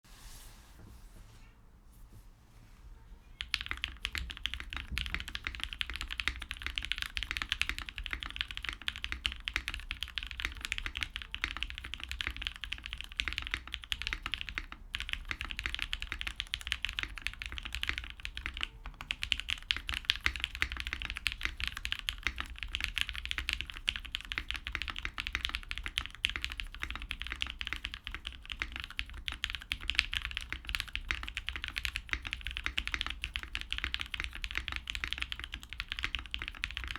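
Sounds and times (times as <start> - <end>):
fast typing on mechanical keyboard: 3.4 - 36.9.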